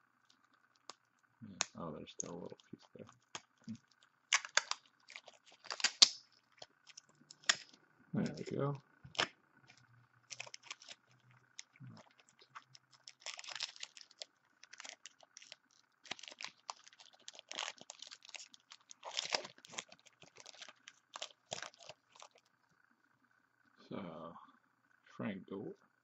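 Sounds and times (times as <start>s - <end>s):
wrapper crinkling and tearing: 2.1s - 8.5s, 9.1s - 22.5s.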